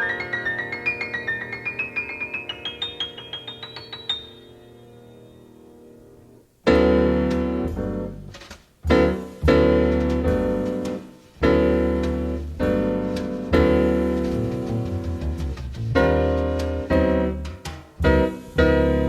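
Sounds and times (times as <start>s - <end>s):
jazz piano chords: 0.0s - 19.0s
low bass notes: 6.8s - 19.0s.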